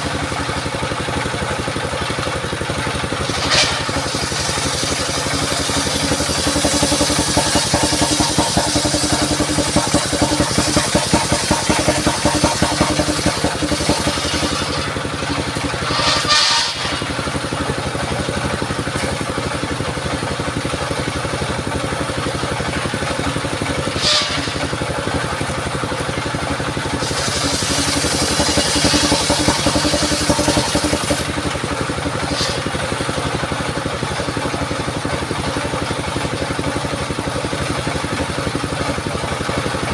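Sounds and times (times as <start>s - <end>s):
sawmill blade cutting wood: 0.0s - 21.4s, 22.1s - 37.6s
brief high whine: 15.9s - 17.2s, 23.9s - 24.7s.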